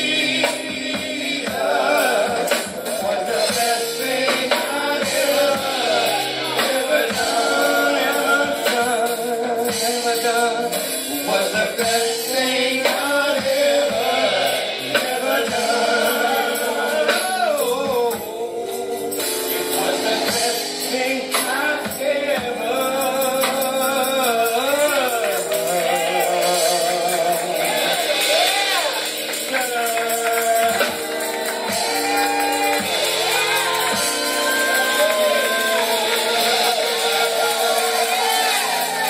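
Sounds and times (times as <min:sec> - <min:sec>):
band playing gospel music: 0:00.0 - 0:39.0
man singing: 0:00.0 - 0:39.0
tambourine shaking: 0:22.8 - 0:39.0.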